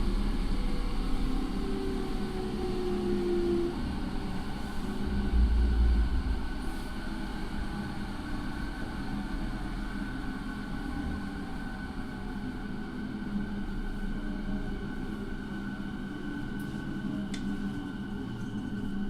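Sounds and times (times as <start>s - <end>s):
train wheel and track rumble: 0.0s - 19.0s
heavy low rumble: 3.8s - 8.4s.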